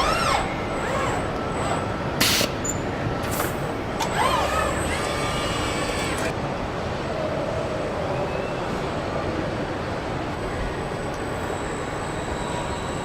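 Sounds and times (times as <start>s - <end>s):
motor whines: 0.0s - 2.0s, 3.4s - 6.3s.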